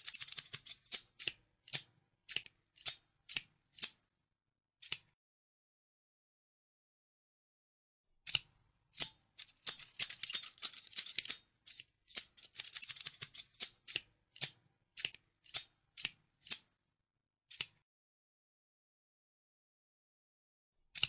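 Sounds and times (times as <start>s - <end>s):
scissors snipping: 0.0s - 4.0s, 4.8s - 5.2s, 8.2s - 16.7s, 17.5s - 17.8s.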